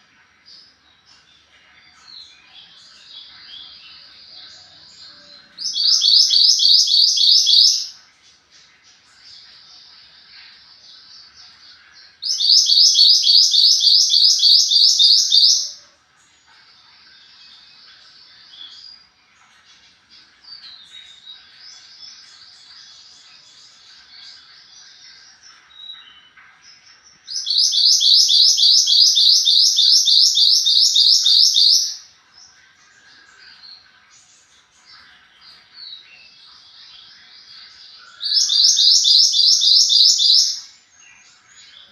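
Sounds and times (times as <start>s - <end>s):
bird chirps: 0.0s - 8.0s, 8.6s - 41.9s
songbird twittering: 2.3s - 8.0s, 12.2s - 15.8s, 20.6s - 32.1s, 35.0s - 41.9s
songbird trilling: 5.2s - 7.9s, 12.2s - 15.8s, 27.3s - 32.0s, 38.1s - 40.7s
bird repeated downslurred notes: 5.6s - 7.9s, 27.4s - 32.0s.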